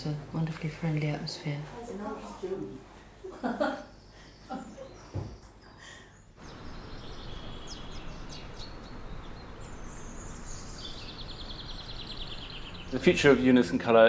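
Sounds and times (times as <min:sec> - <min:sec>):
outdoor background noise: 0:00.0 - 0:14.0
small birds chirping: 0:03.9 - 0:14.0.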